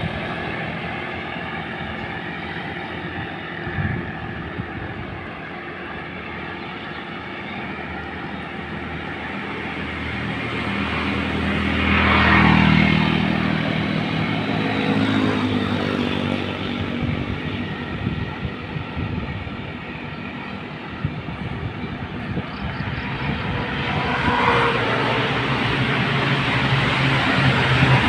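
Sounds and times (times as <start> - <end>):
road and wind noise: 0.0 - 28.0
vehicle engines: 0.0 - 28.0
vehicle passing loudly: 9.3 - 19.1, 22.0 - 28.0.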